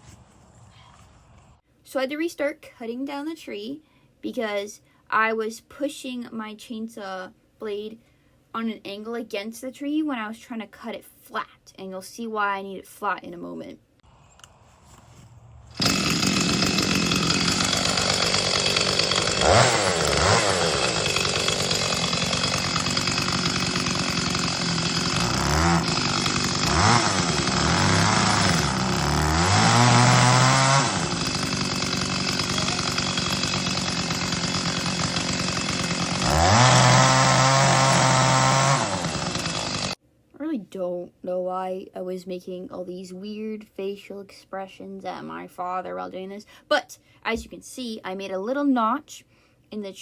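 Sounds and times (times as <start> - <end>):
chainsaw revving: 15.6 - 40.0.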